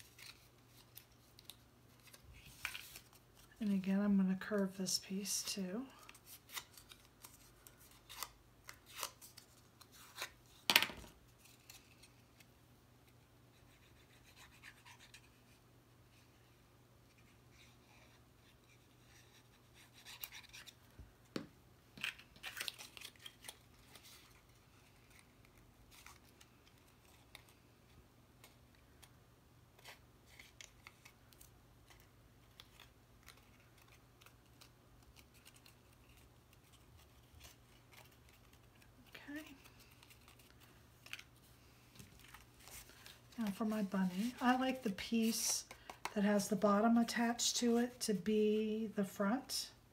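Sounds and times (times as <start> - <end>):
cardstock rustling and scraping: 29.8 - 46.4.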